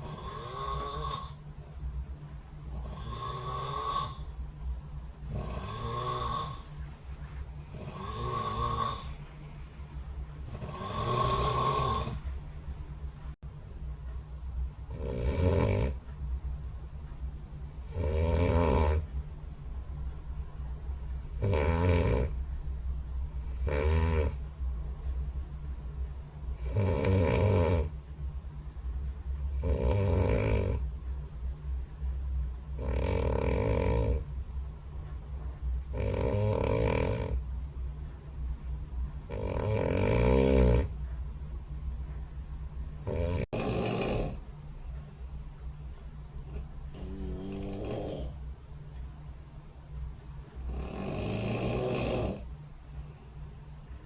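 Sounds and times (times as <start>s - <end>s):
person snoring: 0.0s - 1.4s, 2.7s - 4.3s, 5.3s - 6.7s, 7.7s - 9.2s, 10.5s - 12.2s, 14.9s - 16.0s, 17.9s - 19.0s, 21.4s - 22.3s, 23.5s - 24.4s, 26.6s - 27.9s, 29.6s - 30.8s, 32.8s - 34.2s, 35.9s - 37.4s, 39.3s - 40.9s, 43.1s - 44.4s, 46.9s - 48.4s, 50.7s - 52.5s
steady low hum: 0.0s - 54.0s.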